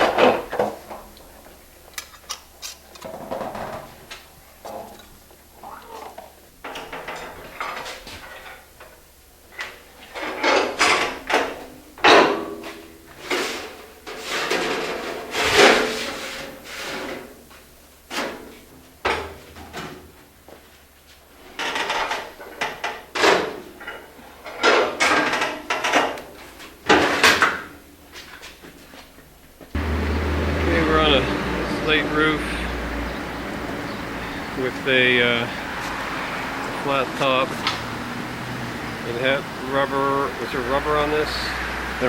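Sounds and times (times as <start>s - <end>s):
sheet copper scraping: 0.0s - 18.7s.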